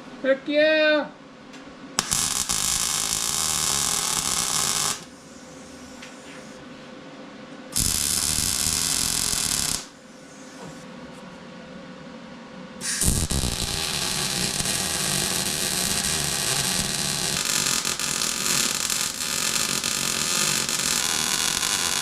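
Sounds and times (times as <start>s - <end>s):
arc welding hiss and crackle: 2.0s - 6.6s, 7.8s - 10.7s, 12.8s - 22.0s.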